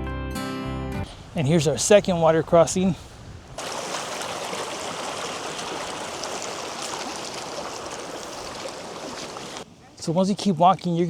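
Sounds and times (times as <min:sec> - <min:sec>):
creek water rushing: 0:01.1 - 0:09.9.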